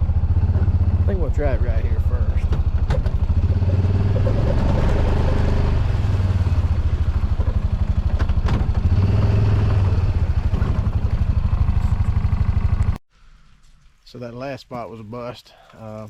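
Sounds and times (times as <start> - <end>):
knocks and rattles from ride: 0.0 - 12.6
vehicle engine running: 0.0 - 13.0.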